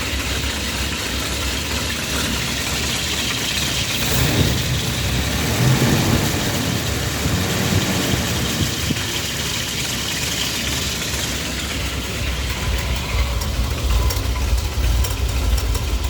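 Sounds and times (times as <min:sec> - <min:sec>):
engine idling: 0:00.0 - 0:16.0.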